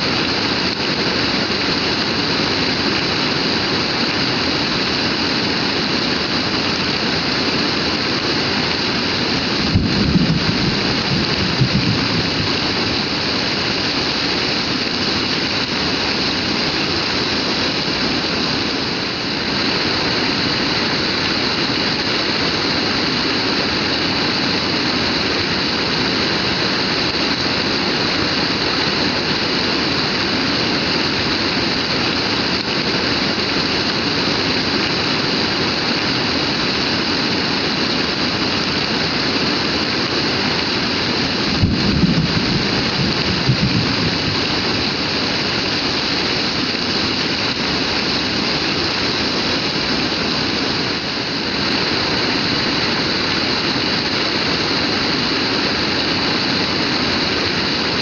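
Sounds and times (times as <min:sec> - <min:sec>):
heavy rain pouring: 0:00.0 - 0:58.0.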